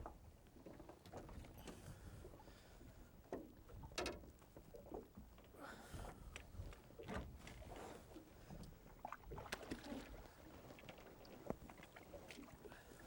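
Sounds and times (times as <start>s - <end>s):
small knocks and clicks: 3.4s - 4.3s.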